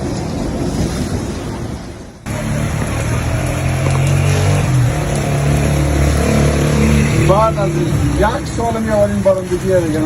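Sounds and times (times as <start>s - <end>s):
vehicle engine droning: 2.3s - 9.9s.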